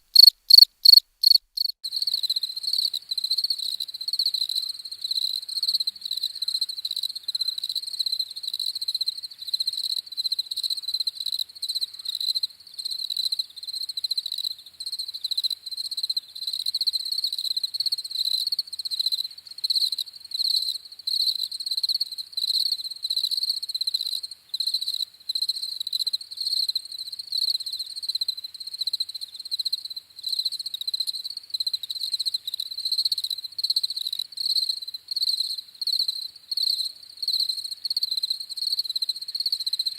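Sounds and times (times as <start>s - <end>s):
crickets chirping: 0.0s - 10.0s.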